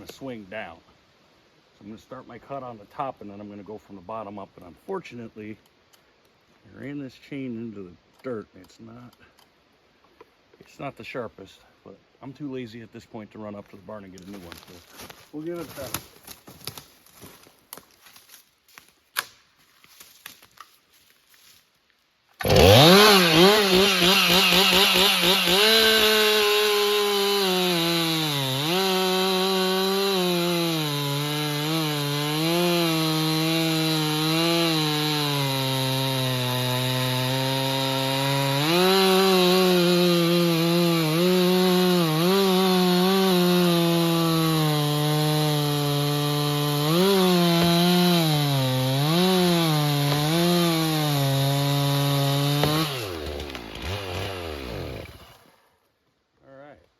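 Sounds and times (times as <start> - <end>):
chainsaw cutting wood: 22.4 - 55.7.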